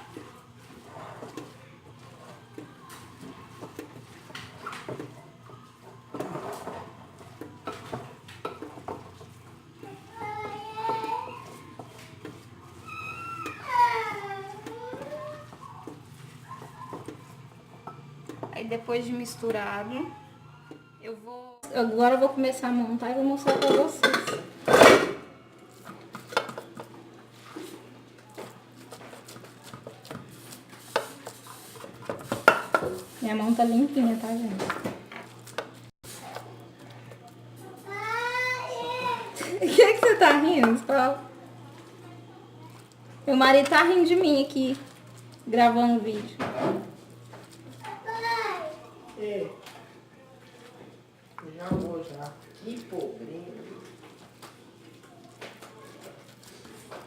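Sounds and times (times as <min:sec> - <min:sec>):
utensil scraping a bowl: 0:00.0 - 0:05.0, 0:06.1 - 0:18.0, 0:25.7 - 0:36.5
kitchen utensils and dishes clicking: 0:23.4 - 0:25.3, 0:30.8 - 0:33.1.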